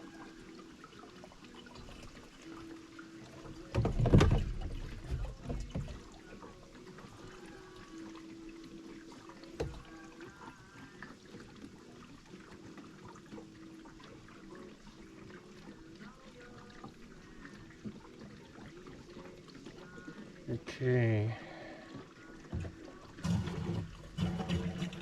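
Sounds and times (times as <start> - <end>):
fuel pouring into a can: 22.9 - 25.0.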